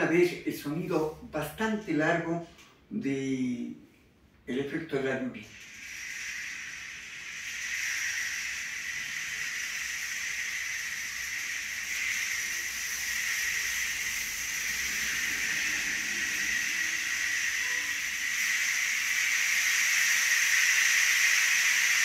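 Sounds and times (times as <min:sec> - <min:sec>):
rain stick hissing: 0:05.3 - 0:22.0.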